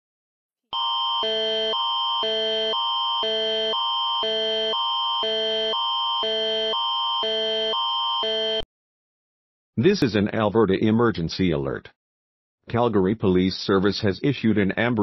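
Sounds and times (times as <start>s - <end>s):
alternating two-chord alert signal: 0.8s - 8.6s
steady high tone: 0.8s - 8.7s.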